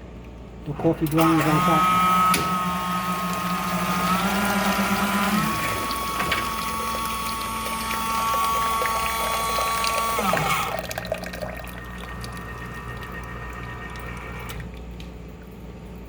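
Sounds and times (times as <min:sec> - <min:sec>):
quiet machine hum: 0:00.0 - 0:16.0
coffee machine pump whine: 0:00.7 - 0:15.2
water pouring into cup: 0:02.6 - 0:14.9.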